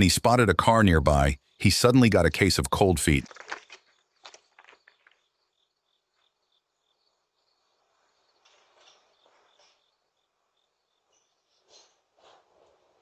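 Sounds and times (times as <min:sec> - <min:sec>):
crickets chirping: 0:03.4 - 0:11.6.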